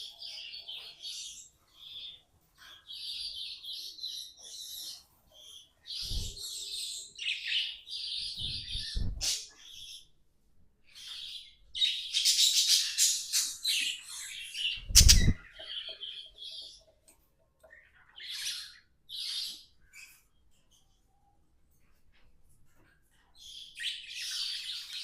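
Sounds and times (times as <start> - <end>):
budgerigars chattering: 14.2 - 16.6.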